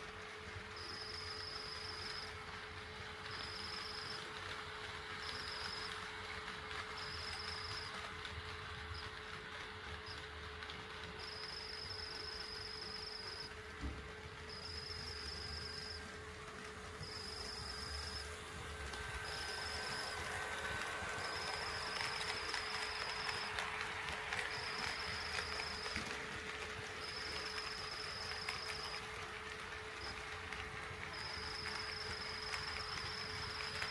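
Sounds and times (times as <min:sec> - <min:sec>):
model train wheels rumbling: 0:09.6 - 0:33.9
high-pitched whine: 0:17.0 - 0:26.2.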